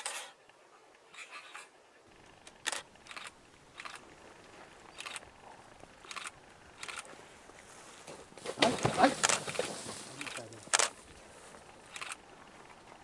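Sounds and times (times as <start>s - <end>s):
faint short rustles: 6.2s - 13.0s.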